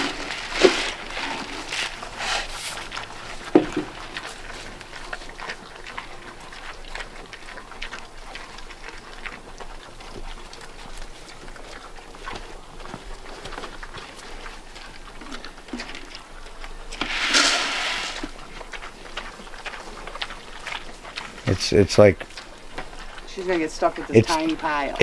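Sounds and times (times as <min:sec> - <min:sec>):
pigs chomping and crunching feed: 0:00.0 - 0:25.0.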